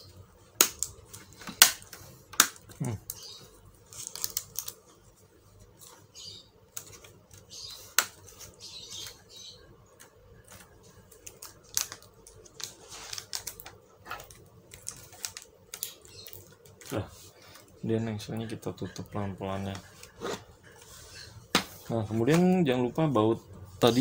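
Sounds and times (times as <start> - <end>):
plastic rustling: 0.8 - 9.2, 10.3 - 18.3.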